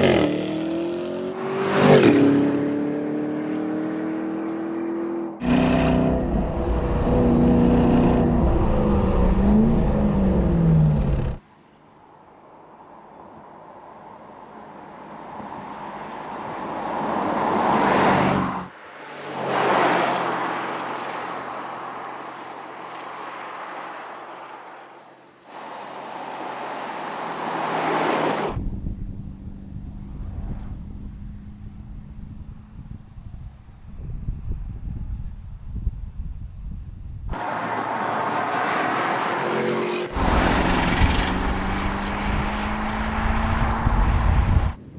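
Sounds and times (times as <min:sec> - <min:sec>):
car engine accelerating hard: 0:00.0 - 0:11.4, 0:37.4 - 0:44.8
car driving past: 0:25.5 - 0:28.6, 0:37.4 - 0:44.8.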